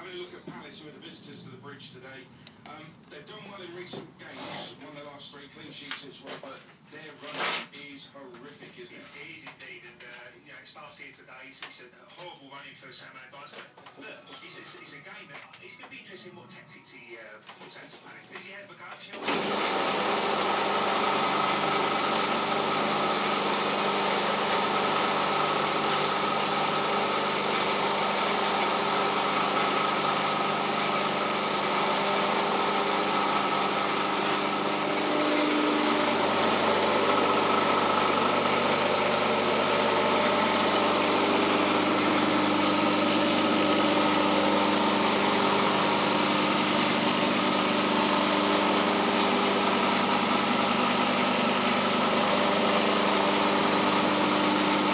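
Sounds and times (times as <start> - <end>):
belt grinder running: 19.2 - 54.9.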